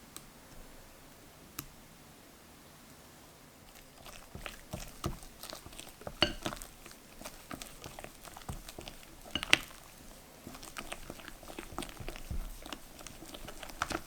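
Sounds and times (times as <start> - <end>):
utensils tapping a bowl: 4.0 - 14.0.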